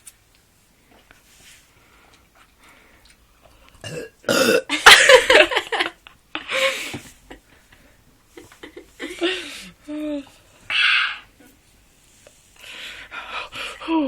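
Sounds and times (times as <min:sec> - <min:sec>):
person burping loudly: 0:03.8 - 0:04.9.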